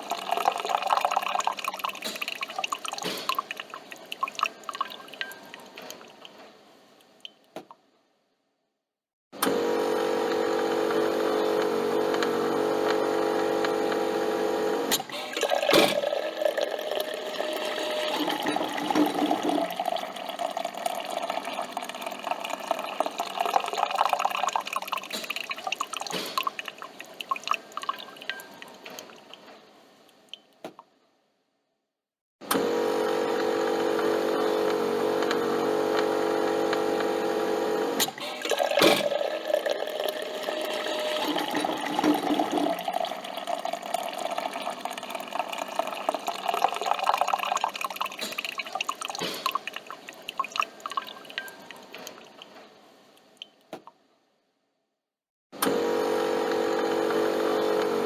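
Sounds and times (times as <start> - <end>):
coffee dripping into a cup: 0.0 - 6.4, 15.2 - 29.4, 38.2 - 52.6
coffee machine hum: 9.4 - 25.0, 32.5 - 48.2, 55.6 - 58.0.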